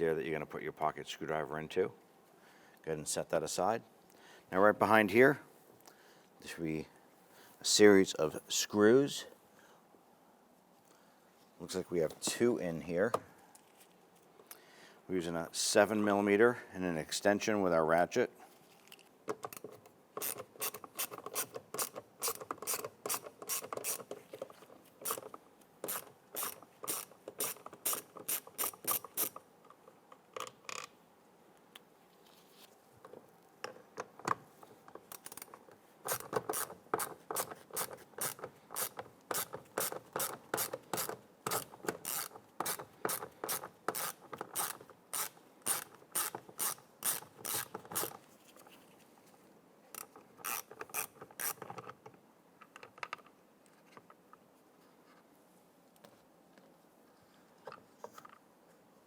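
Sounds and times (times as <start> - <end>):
hand ratchet clicking: 20.2 - 24.2, 25.0 - 29.4, 35.1 - 48.2, 50.0 - 51.8.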